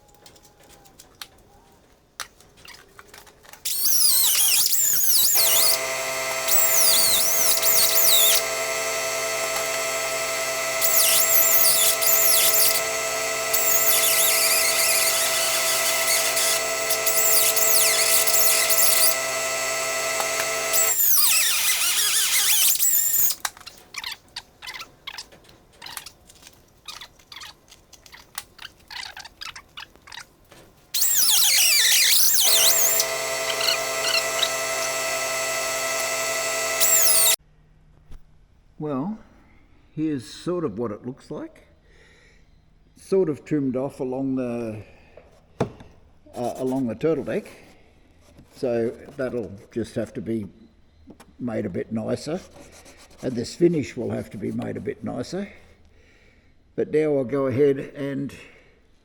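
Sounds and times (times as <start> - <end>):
faint clicks and handling noises: 0.0 - 3.7, 25.2 - 30.8
die grinder cutting: 3.7 - 25.2, 31.0 - 37.4.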